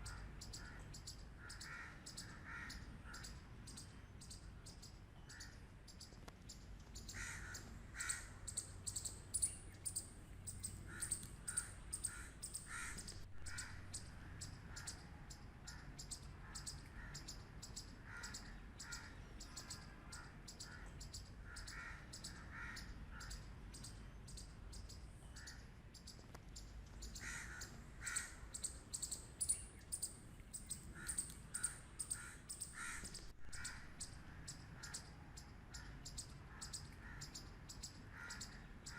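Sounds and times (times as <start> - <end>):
squirrel barking: 7.0 - 23.5, 27.0 - 35.1.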